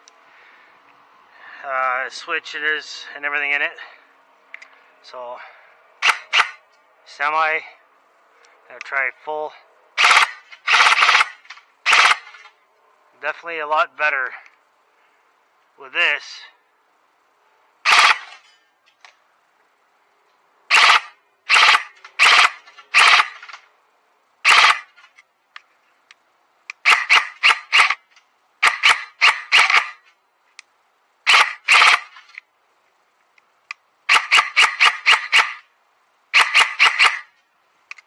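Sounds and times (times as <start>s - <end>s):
airsoft gun firing: 6.0s - 6.6s, 10.0s - 12.4s, 17.8s - 18.3s, 20.7s - 23.5s, 24.4s - 24.9s, 26.8s - 28.0s, 28.6s - 30.0s, 31.3s - 32.2s, 34.1s - 35.6s, 36.3s - 37.3s.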